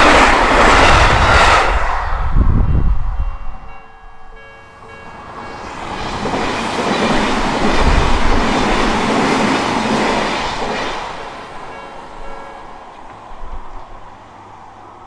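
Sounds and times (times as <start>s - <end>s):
train rumble and wheel noise: 0.0s - 15.0s
crossing bell ringing: 2.6s - 9.0s, 11.1s - 14.0s.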